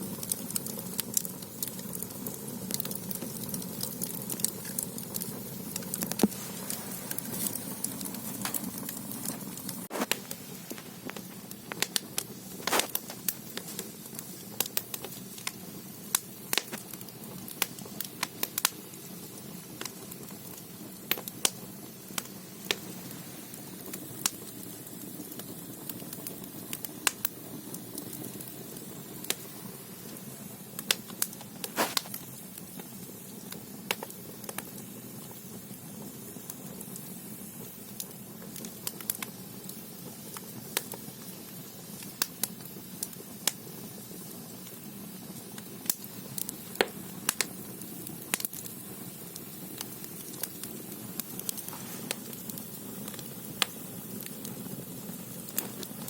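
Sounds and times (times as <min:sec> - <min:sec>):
fire crackling and popping: 0:00.0 - 0:56.0
low fire roar: 0:00.0 - 0:56.0.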